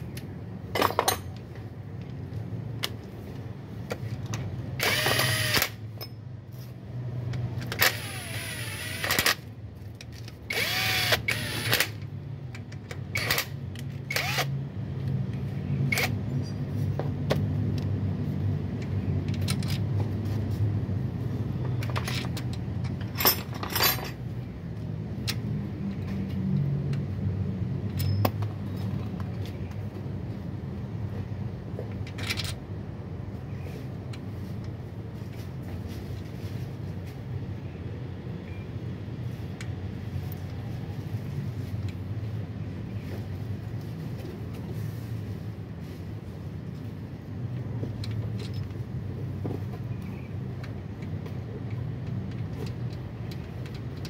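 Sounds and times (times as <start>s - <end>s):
metallic tool clinks: 28.0s - 28.8s.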